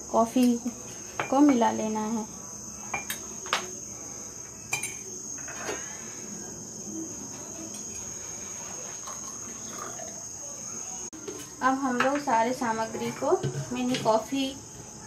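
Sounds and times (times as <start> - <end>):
steady high-pitched whine: 0.0 - 13.5
spoon clinking against cup: 4.7 - 5.1.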